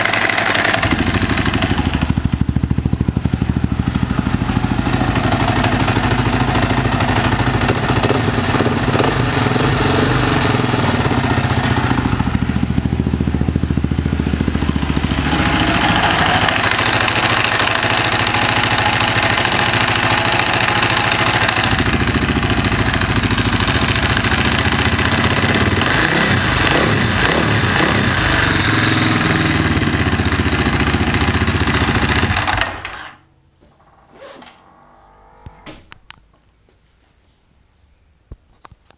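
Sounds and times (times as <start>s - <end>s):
clattering motorcycle engine: 0.0s - 33.9s.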